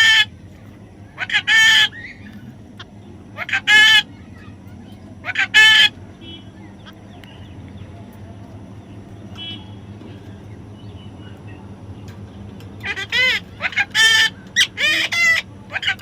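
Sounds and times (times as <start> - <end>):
baby parrot calling: 0.0 - 0.3, 1.1 - 4.5, 5.2 - 7.0, 12.8 - 16.0
low steady hum: 0.0 - 16.0.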